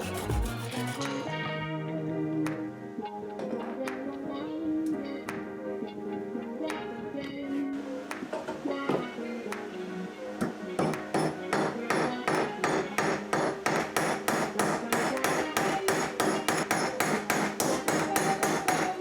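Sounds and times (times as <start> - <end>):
hammer striking steel: 10.8 - 19.0.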